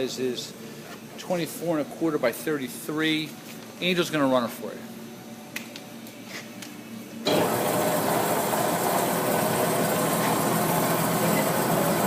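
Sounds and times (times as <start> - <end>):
bandsaw running: 7.3 - 12.0.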